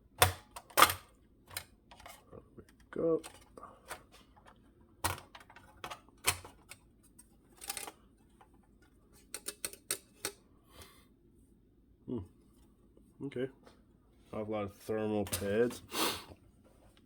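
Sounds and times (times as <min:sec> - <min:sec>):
parts clicking and knocking: 0:00.2 - 0:06.8, 0:07.5 - 0:08.5, 0:09.2 - 0:10.4.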